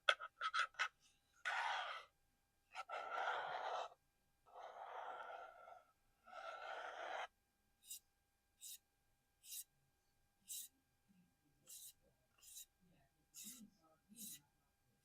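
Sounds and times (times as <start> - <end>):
rubbing strokes on object: 7.0 - 8.0, 8.6 - 8.8, 9.4 - 9.7, 10.5 - 10.7, 11.7 - 12.7, 13.4 - 13.6, 14.2 - 14.4.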